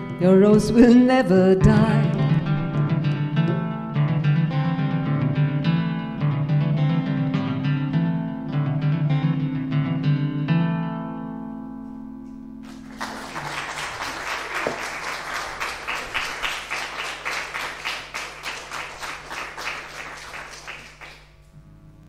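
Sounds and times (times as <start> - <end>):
acoustic guitar chord ringing: 0.0 - 12.6
audience applause: 12.6 - 21.4.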